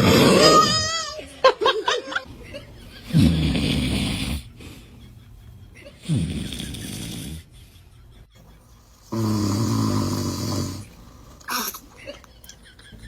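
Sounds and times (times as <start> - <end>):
man snoring: 3.0 - 4.6, 6.0 - 7.5, 9.0 - 11.6.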